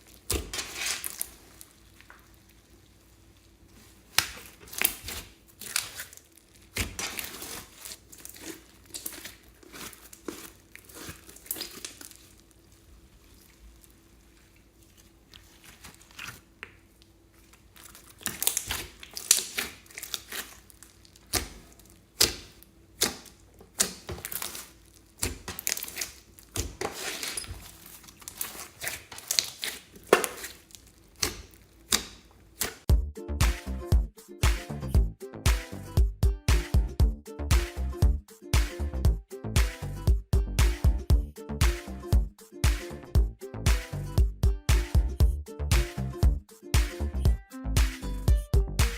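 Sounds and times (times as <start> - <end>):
slime crackling and popping: 0.0 - 3.0, 4.1 - 32.9.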